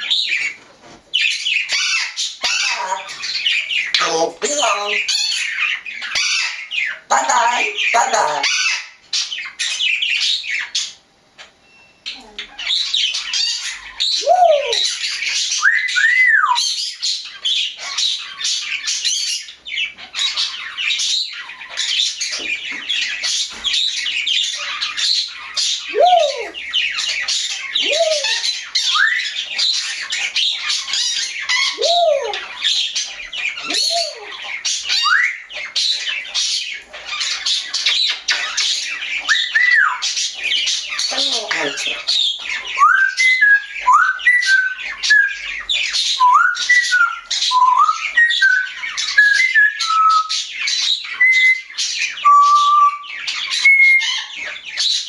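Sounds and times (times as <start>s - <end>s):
parrot squawking and chattering: 0.0s - 55.0s
parrot whistles: 51.1s - 54.3s.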